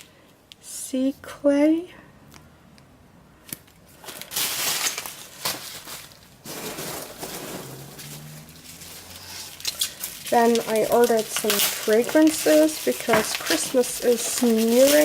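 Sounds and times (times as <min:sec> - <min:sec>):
packaging rustling and crinkling: 0:03.8 - 0:15.0.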